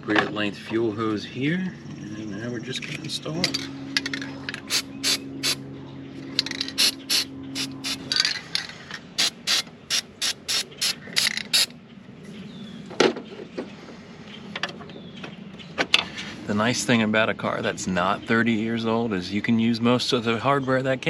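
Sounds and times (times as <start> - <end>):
low steady hum: 0.0 - 12.9
hand ratchet clicking: 6.4 - 8.2, 9.2 - 11.7.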